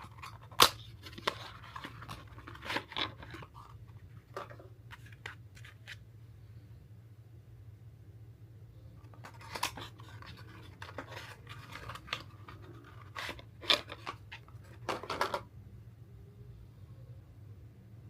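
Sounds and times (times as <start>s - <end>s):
packaging scraping and clicking: 0.0s - 6.0s, 9.0s - 15.4s
steady low hum: 0.0s - 14.9s.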